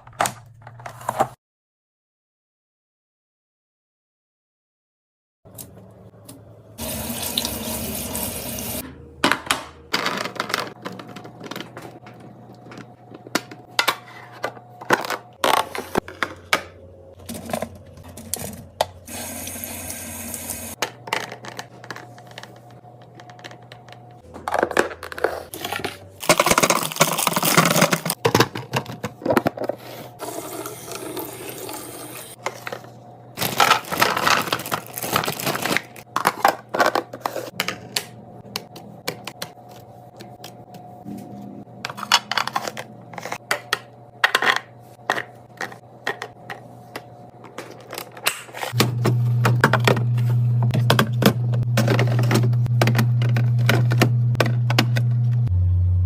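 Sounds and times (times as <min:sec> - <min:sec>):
running water: 0:06.8 - 0:08.8
containers and packaging clicking: 0:20.8 - 0:29.8, 0:33.4 - 0:40.9, 0:41.9 - 0:55.4.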